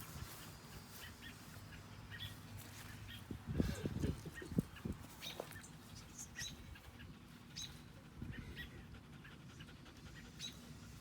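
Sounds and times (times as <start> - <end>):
small bird chirping: 4.4 - 6.9.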